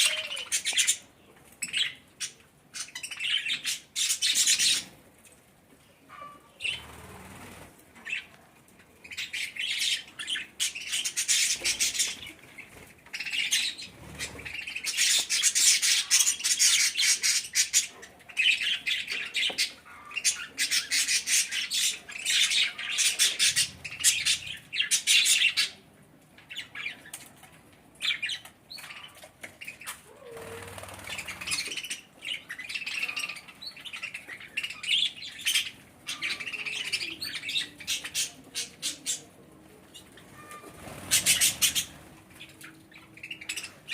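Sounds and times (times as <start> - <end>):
budgerigars chattering and chirping: 0.0 - 5.0, 9.0 - 25.8, 28.0 - 39.3, 39.9 - 42.1, 43.2 - 43.9.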